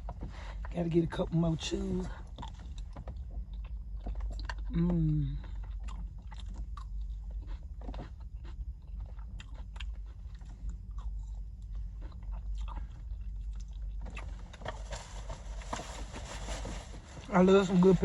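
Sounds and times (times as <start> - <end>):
person chewing food: 2.1 - 15.7.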